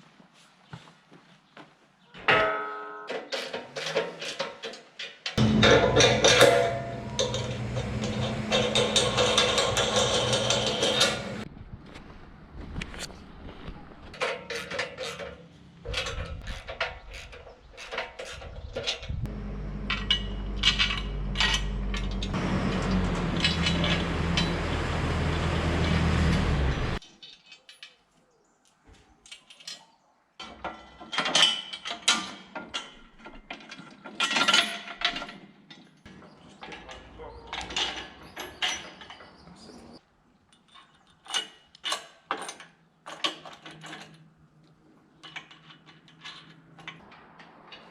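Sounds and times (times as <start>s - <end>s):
metal clanks: 2.2s - 11.5s, 14.1s - 28.0s, 30.4s - 39.7s
engine running: 5.4s - 11.4s, 19.3s - 27.0s.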